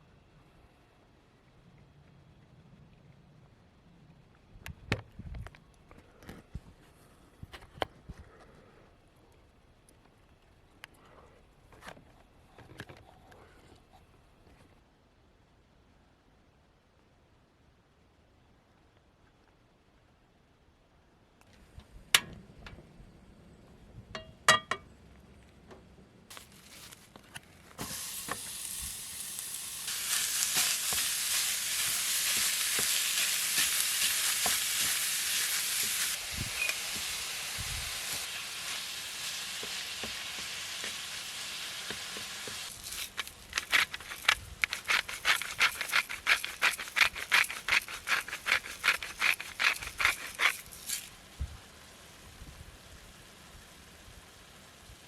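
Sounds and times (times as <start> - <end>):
food sizzling in a pan: 27.8 - 44.1
utensil clinking rapidly: 42.7 - 51.1.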